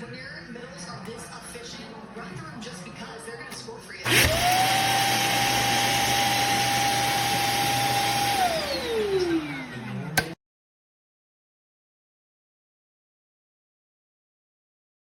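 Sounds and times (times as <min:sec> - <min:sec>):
vacuum motor whining: 0:04.0 - 0:10.4.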